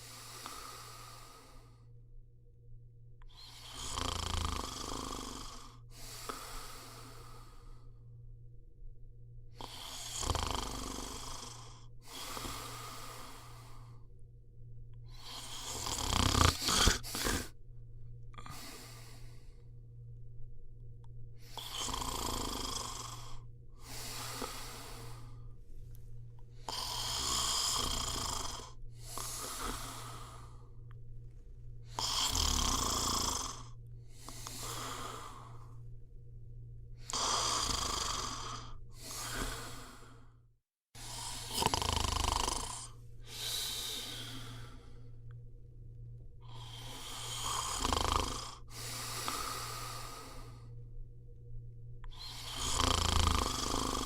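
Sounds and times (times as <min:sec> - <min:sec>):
person snoring: 0:00.0 - 0:01.9, 0:03.3 - 0:08.0, 0:09.5 - 0:14.1, 0:15.0 - 0:17.6, 0:18.3 - 0:19.8, 0:21.4 - 0:25.6, 0:26.6 - 0:30.9, 0:31.8 - 0:35.9, 0:37.0 - 0:40.4, 0:41.0 - 0:45.4, 0:46.4 - 0:50.8, 0:52.0 - 0:54.0.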